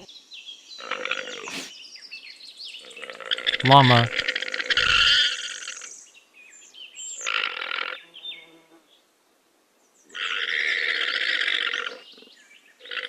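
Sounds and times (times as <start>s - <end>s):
llama calling: 3.6s - 5.2s.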